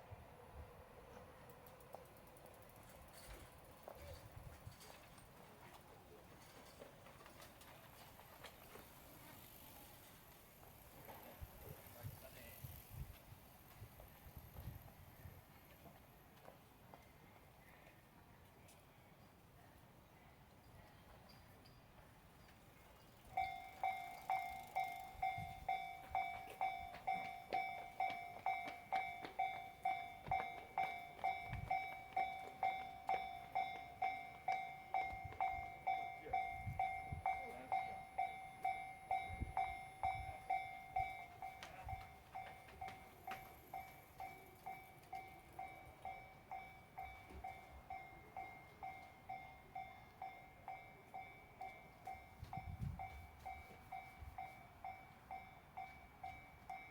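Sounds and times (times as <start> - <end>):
level crossing bell dinging: 23.4 - 54.3.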